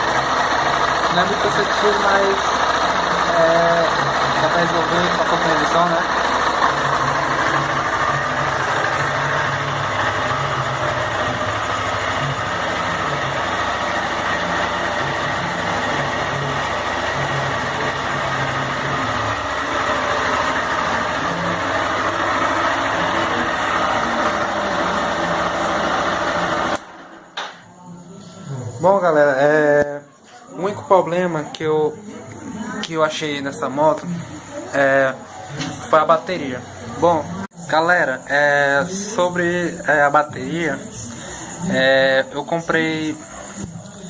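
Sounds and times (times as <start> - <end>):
motorcycle engine idling: 0.0 - 27.7.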